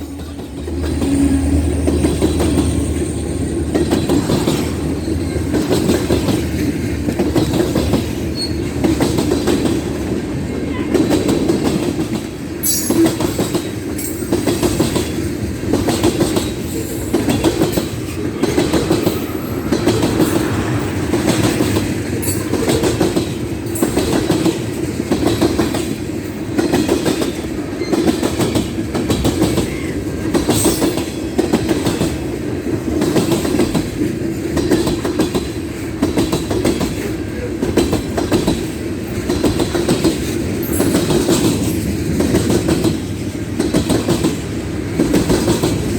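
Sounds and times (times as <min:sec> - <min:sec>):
railroad cars rumbling: 0:00.0 - 0:45.9
wheels clickety-clack: 0:00.0 - 0:45.9
wheel squeals: 0:08.3 - 0:08.8.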